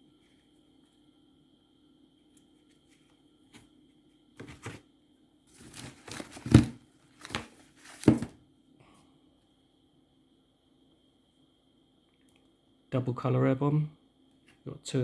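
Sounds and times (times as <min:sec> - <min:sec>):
faint steady hum: 0:00.0 - 0:15.0
packaging rustling and crinkling: 0:05.5 - 0:08.4.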